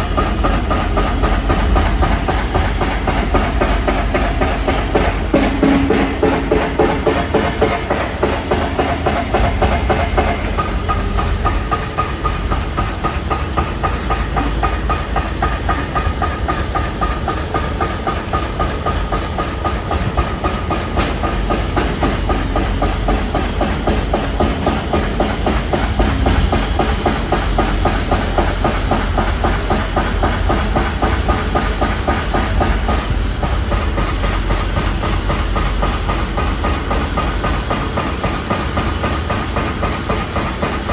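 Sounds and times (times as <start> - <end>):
machine whine: 0.0 - 19.4
machinery clattering: 0.0 - 40.9.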